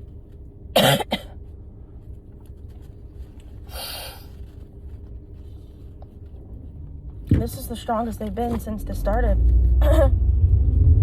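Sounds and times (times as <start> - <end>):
car road rumble: 0.0 - 11.0
hissing breath: 3.7 - 4.4.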